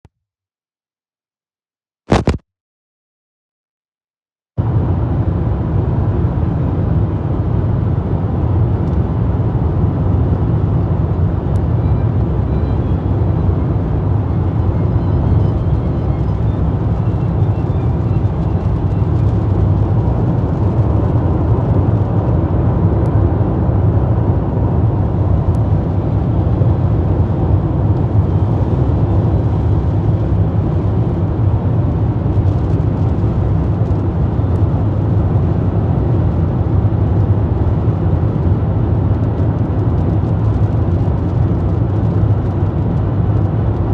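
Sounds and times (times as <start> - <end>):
car driving on wet road: 11.6 - 43.9.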